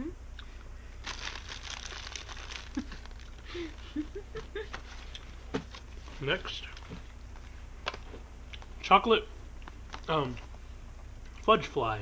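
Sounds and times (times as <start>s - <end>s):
popping candy crackling: 1.0s - 3.7s.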